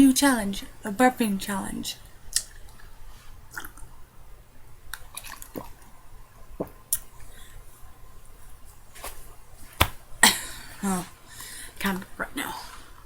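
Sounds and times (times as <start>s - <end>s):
sipping and swallowing water: 4.9s - 5.9s.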